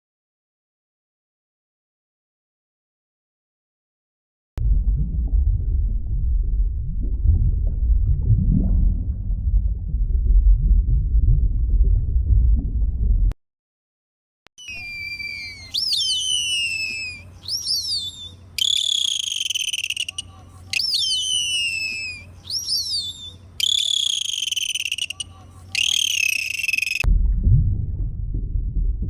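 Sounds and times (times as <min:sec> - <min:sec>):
dolphin whistles: 0:14.6 - 0:27.1.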